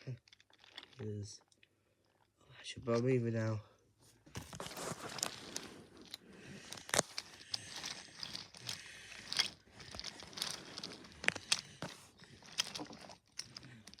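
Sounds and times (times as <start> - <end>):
crunchy rustling: 4.1 - 14.0.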